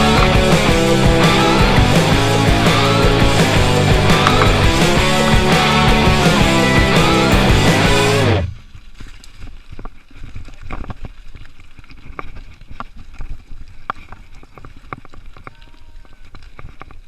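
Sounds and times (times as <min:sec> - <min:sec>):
bike rattling and knocking: 0:00.0 - 0:06.9
tyres rumbling: 0:00.0 - 0:08.7
wind: 0:08.4 - 0:17.0.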